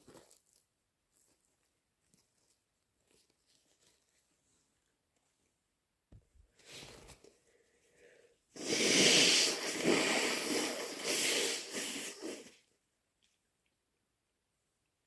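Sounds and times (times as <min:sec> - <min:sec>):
person blowing nose: 0:08.6 - 0:12.6.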